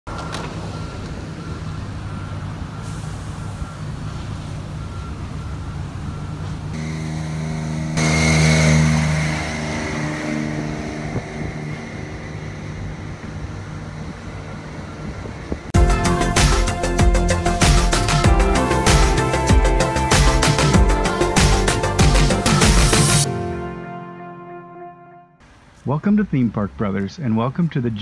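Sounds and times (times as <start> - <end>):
reversing alarm beeping: 0.1 - 15.7
truck engine running: 0.1 - 23.3.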